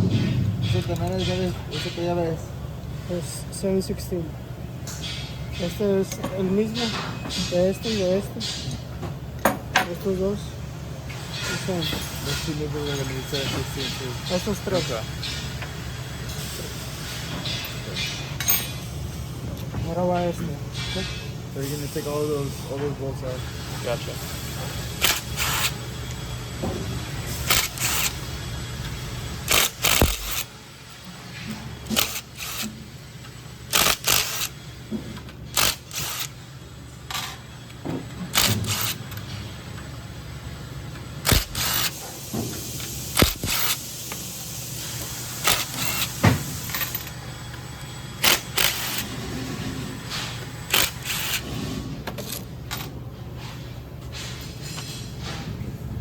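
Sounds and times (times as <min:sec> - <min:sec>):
low steady hum: 0:00.0 - 0:16.3
metal tools clinking and knocking: 0:17.4 - 0:18.9, 0:45.4 - 0:47.2.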